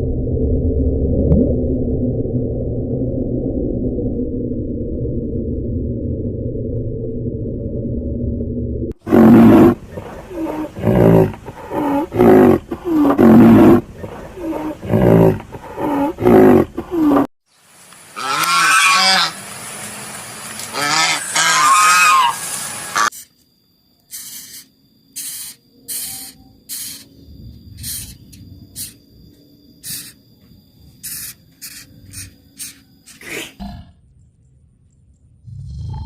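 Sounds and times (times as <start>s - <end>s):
loud repeated animal calls: 18.2s - 19.4s, 20.7s - 23.2s, 24.1s - 27.1s, 27.8s - 29.0s, 29.8s - 30.2s, 31.0s - 33.8s
wavering high-pitched animal calls: 20.8s - 23.2s, 27.8s - 29.0s.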